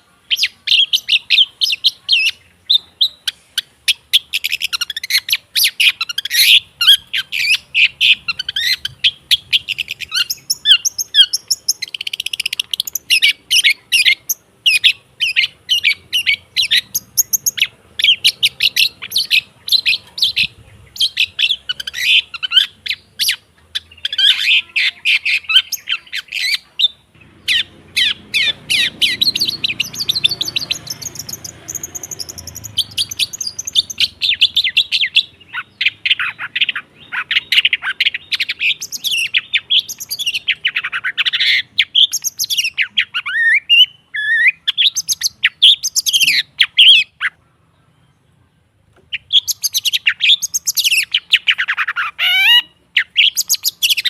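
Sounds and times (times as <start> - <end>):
bird chattering song: 0.0 - 54.0.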